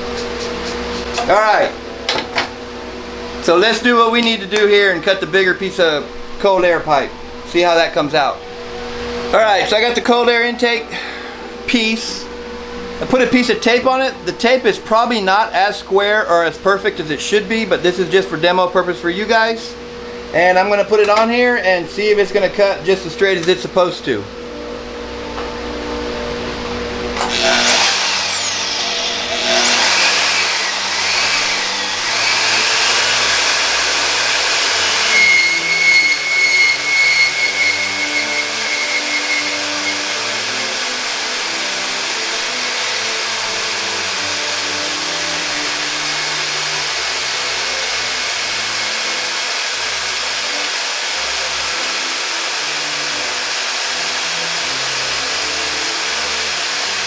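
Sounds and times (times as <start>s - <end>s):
band saw cutting pipe: 0.0s - 1.4s, 27.2s - 57.0s
high ringing tone: 35.1s - 40.1s.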